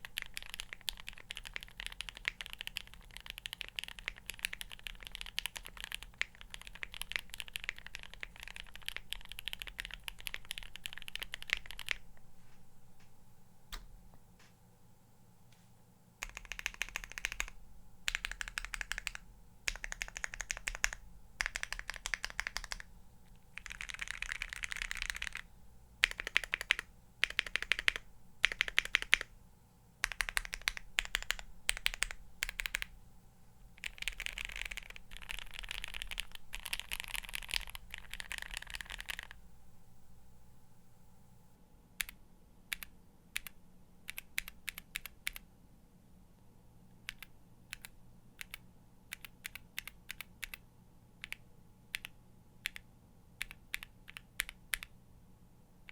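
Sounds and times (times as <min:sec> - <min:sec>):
mechanical keyboard typing: 0:00.0 - 0:12.0, 0:16.2 - 0:22.9, 0:23.5 - 0:29.3, 0:30.0 - 0:32.9, 0:33.8 - 0:39.4, 0:42.0 - 0:45.4, 0:47.0 - 0:50.6, 0:51.2 - 0:55.0.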